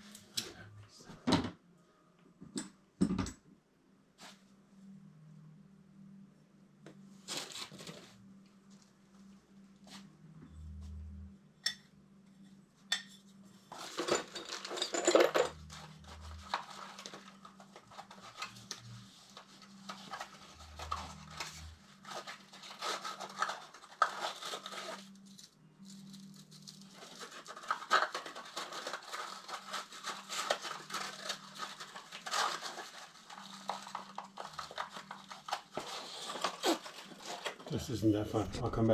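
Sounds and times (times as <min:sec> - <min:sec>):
metal pipe clinking and scraping: 0:12.9 - 0:17.2.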